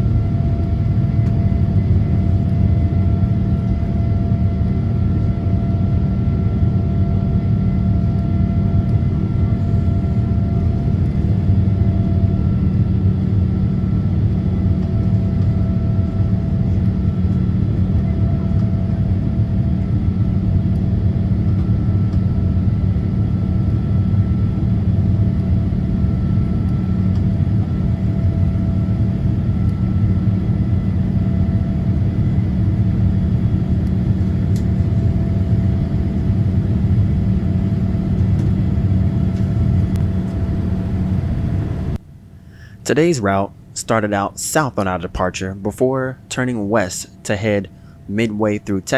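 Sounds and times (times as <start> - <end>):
rumble of engines and airflow: 0.0 - 48.9
faint steady whine: 14.8 - 48.9.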